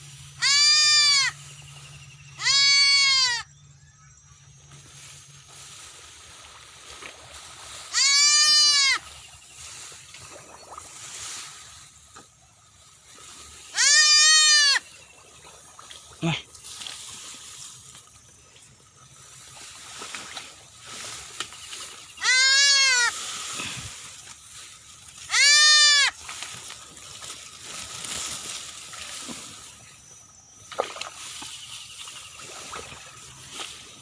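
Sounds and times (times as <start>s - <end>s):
goat kid bleating: 0.4s - 1.4s, 2.4s - 3.4s, 7.9s - 9.0s, 13.7s - 14.8s, 22.2s - 23.1s, 25.3s - 26.2s.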